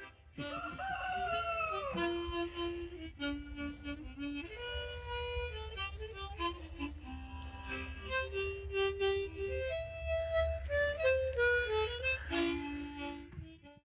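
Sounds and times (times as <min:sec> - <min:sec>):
harmonica playing polka melody: 0:00.0 - 0:13.8.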